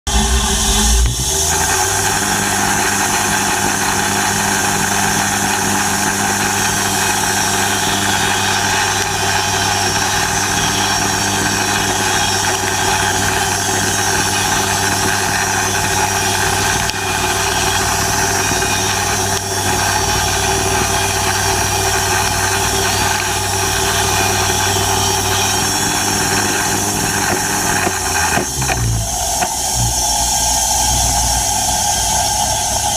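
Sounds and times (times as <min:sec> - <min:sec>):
sawmill engine running: 0:00.0 - 0:32.9.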